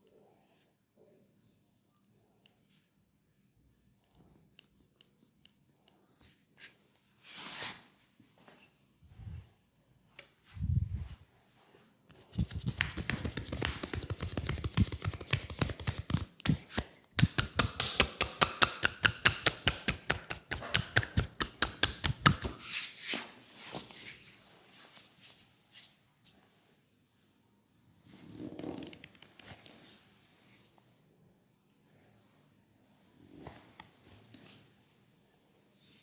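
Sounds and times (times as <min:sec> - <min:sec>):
soft rustling: 0:10.5 - 0:18.4
rapid tapping massage strokes: 0:12.1 - 0:22.7.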